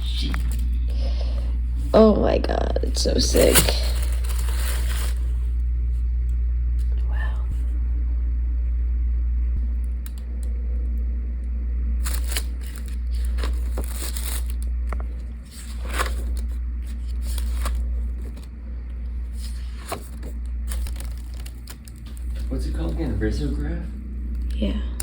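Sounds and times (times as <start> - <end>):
paper rustling and crinkling: 0.0 - 1.2, 2.9 - 5.4, 12.0 - 18.5, 19.2 - 23.2
low steady rumble: 0.0 - 25.0.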